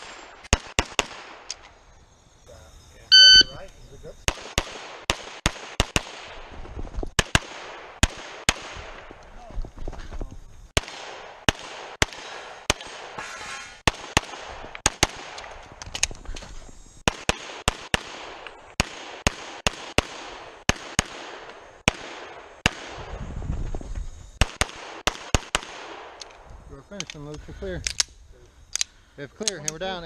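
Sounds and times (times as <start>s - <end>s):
pistol shots: 0.0s - 1.6s, 4.3s - 6.4s, 7.2s - 9.1s, 10.8s - 13.2s, 13.8s - 15.5s, 17.0s - 23.1s, 24.4s - 26.2s.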